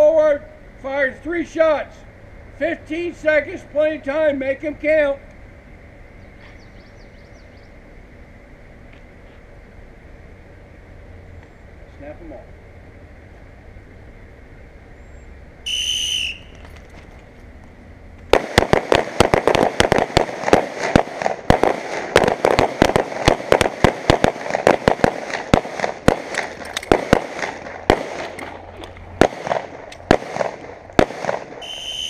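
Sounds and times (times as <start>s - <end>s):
range whistle blowing: 15.6s - 16.7s, 31.6s - 32.0s
rapid handgun shots: 18.3s - 28.6s, 29.2s - 31.7s.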